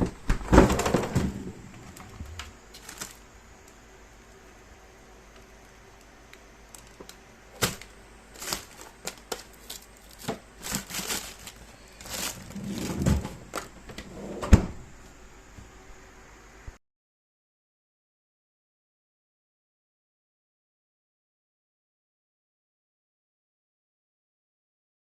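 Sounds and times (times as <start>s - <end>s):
rustling: 0.5s - 3.2s, 6.8s - 14.1s.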